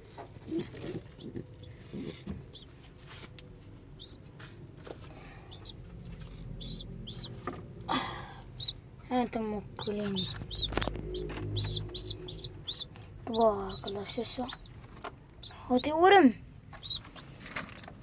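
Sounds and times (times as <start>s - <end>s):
pigeon squabs peeping: 0.4s - 2.8s, 3.9s - 4.3s, 5.2s - 7.8s, 8.4s - 8.9s, 9.6s - 18.0s
rustling in a loft: 16.7s - 18.0s.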